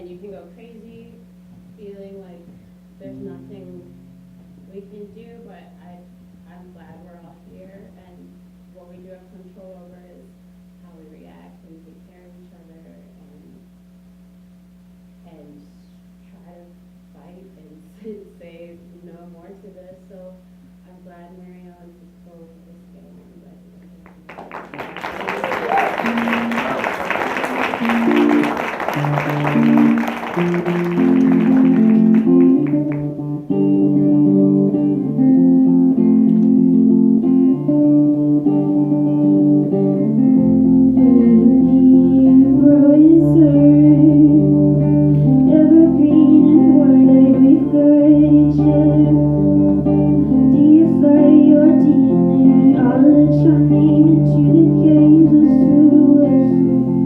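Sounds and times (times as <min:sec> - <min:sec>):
acoustic guitar chords: 0:00.0 - 0:15.2, 0:21.0 - 0:57.0
bass: 0:00.0 - 0:57.0
audience clapping: 0:24.0 - 0:33.2
person singing: 0:41.0 - 0:44.6, 0:45.3 - 0:49.4, 0:50.2 - 0:57.0.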